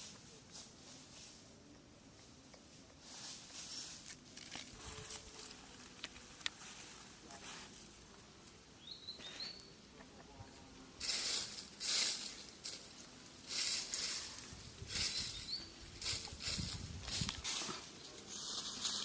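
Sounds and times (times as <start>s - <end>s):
rustling: 2.2s - 8.6s, 11.0s - 19.0s.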